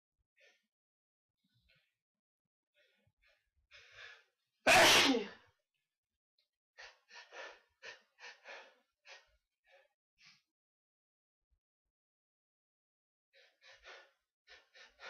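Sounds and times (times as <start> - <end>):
person sneezing: 4.7 - 5.4.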